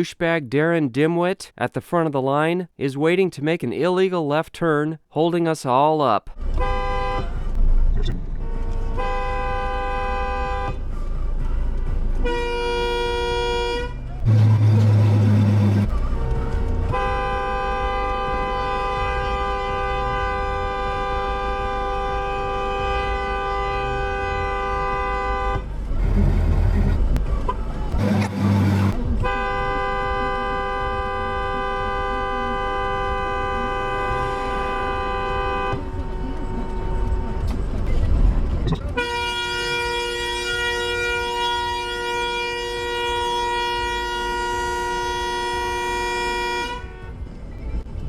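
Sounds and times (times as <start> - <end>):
car horn blasts: 6.4 - 7.5, 8.4 - 10.9, 12.2 - 38.2, 38.8 - 47.6
fainter horn note: 12.2 - 16.0, 27.9 - 30.2.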